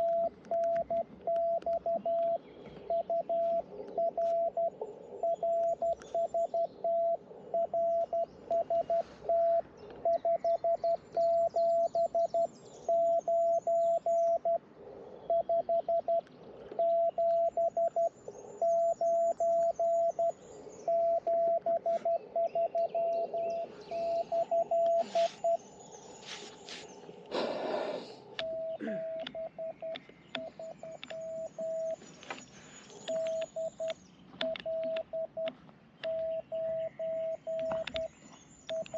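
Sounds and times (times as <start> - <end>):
faint clicks: 0.0 - 4.5, 16.1 - 18.1, 28.3 - 36.4, 37.5 - 38.9
morse code tone: 0.0 - 4.7, 5.3 - 14.6, 16.8 - 20.3, 20.9 - 25.6, 28.4 - 32.0, 33.1 - 38.1.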